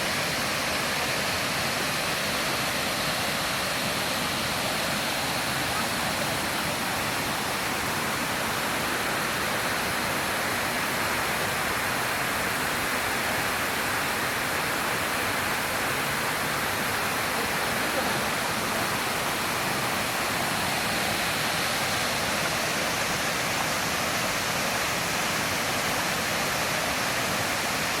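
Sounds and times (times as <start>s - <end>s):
waterfall pouring and splashing: 0.0s - 28.0s.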